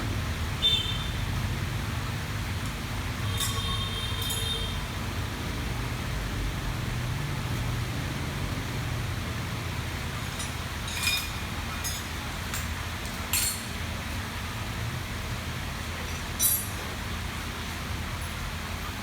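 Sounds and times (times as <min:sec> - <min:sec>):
sharp metallic clinks: 0:03.2 - 0:04.7, 0:16.2 - 0:16.8.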